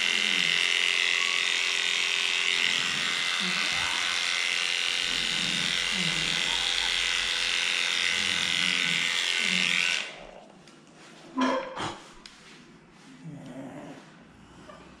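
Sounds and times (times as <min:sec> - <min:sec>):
electric clippers buzzing: 0:00.0 - 0:10.4.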